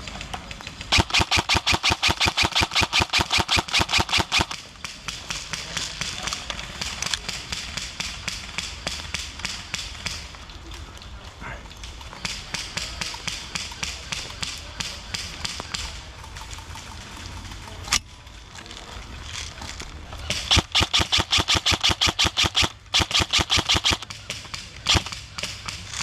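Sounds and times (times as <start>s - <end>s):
airsoft guns firing: 0.1s - 10.3s, 12.2s - 16.0s, 20.2s - 26.0s.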